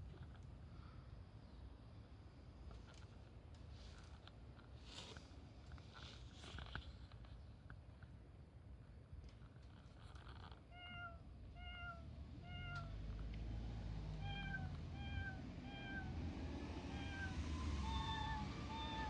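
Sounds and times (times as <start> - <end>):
recorded cat meows as notes: 10.7 - 13.0, 14.2 - 16.2.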